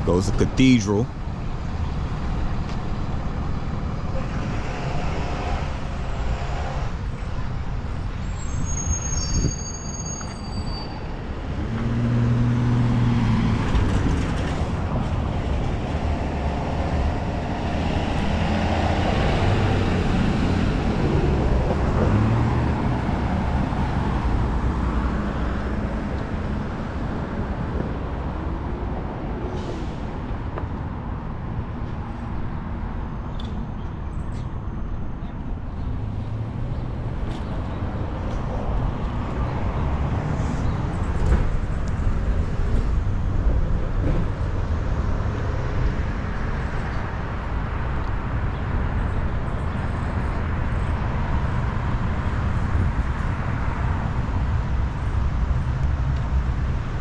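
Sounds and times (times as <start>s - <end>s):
rumble of traffic: 0.0s - 57.0s
high squeal: 8.2s - 11.2s.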